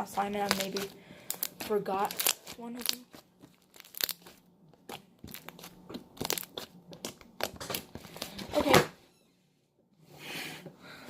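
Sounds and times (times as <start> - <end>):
slime squished by hand crackling: 0.1 - 8.4.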